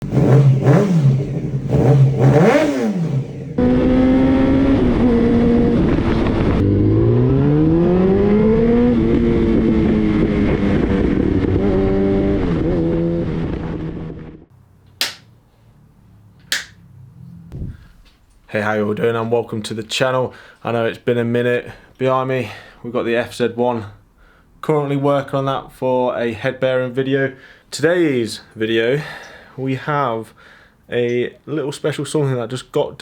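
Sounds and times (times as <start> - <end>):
motorcycle engine revving: 0.0 - 13.2
sharp snap: 15.0 - 15.3, 16.4 - 16.8.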